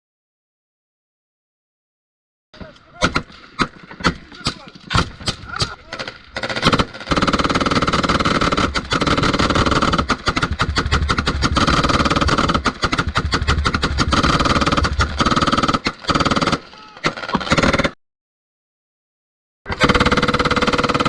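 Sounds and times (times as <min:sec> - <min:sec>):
crackling and buffeting: 0:02.6 - 0:16.5.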